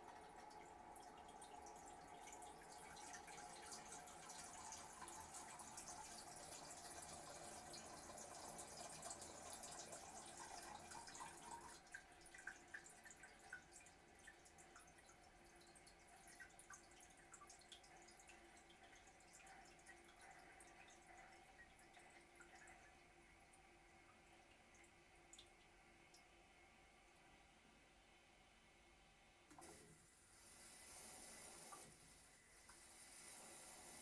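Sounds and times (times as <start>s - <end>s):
water drips and trickles: 0.0s - 26.3s.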